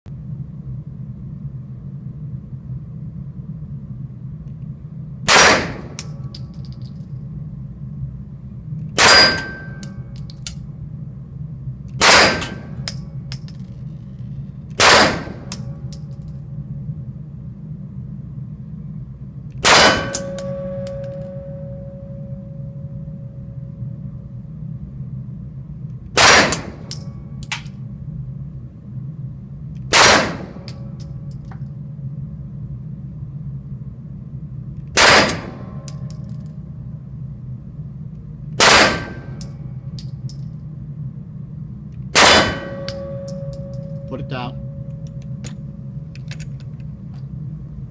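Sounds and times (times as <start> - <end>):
low rumble: 0.1 - 47.9
gunshots: 5.3 - 5.9, 12.0 - 12.6, 14.8 - 15.4
steel plate ringing: 42.6 - 45.2
metallic pings on steel targets: 42.7 - 45.0.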